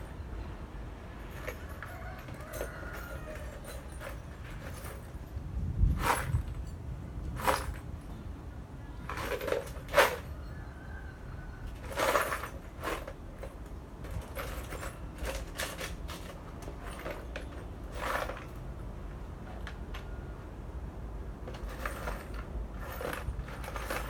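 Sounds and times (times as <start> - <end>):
hand tools knocking and clinking: 9.0 - 10.3.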